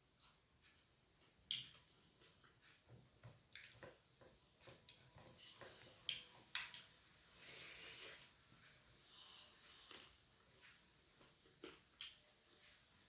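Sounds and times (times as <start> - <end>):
chewing with mouth clicks: 0.2 - 4.0, 9.7 - 12.7.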